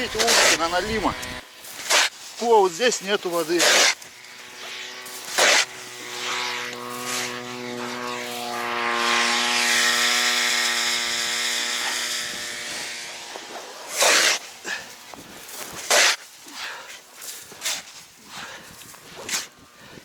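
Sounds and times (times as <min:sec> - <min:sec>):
motor engine humming: 0:00.0 - 0:01.8.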